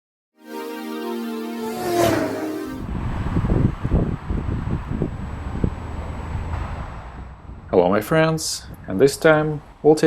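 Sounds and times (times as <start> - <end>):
electronic sustained chord: 0.4 - 3.0
tone gliding in pitch: 0.4 - 3.0.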